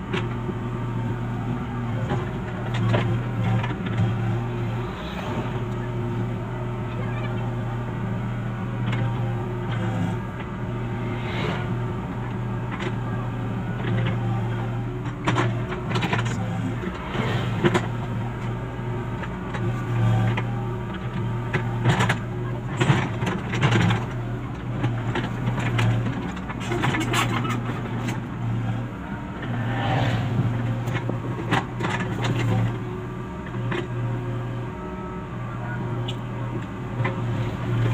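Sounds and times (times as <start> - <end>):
excavator diesel engine running: 0.0 - 37.9.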